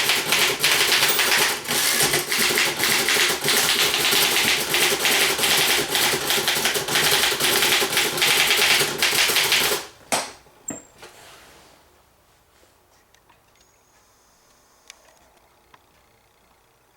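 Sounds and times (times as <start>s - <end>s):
typewriter keys clattering: 0.0s - 9.9s
sharp typewriter clacks: 0.0s - 10.3s.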